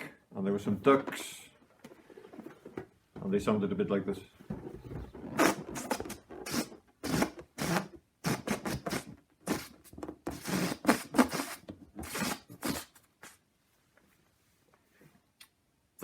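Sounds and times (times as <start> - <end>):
balloon squawks: 5.2 - 13.4.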